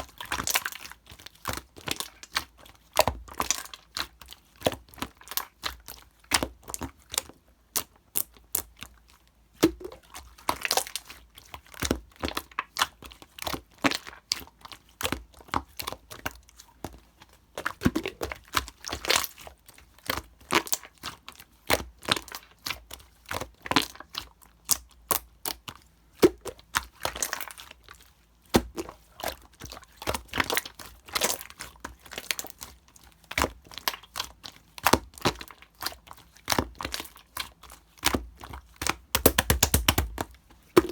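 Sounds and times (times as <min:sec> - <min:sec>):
slime squished by hand: 0:33.3 - 0:40.9.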